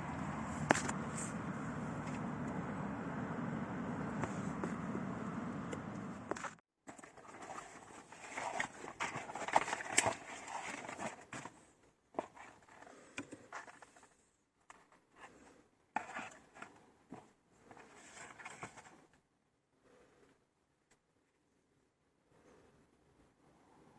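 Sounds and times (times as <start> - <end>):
hands scraping and rustling car parts: 0.0 - 2.6, 4.0 - 19.2.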